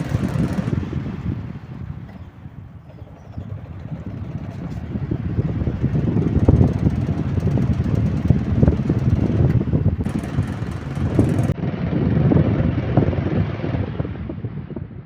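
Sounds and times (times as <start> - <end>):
electric fan rattling and knocking: 0.0 - 11.6.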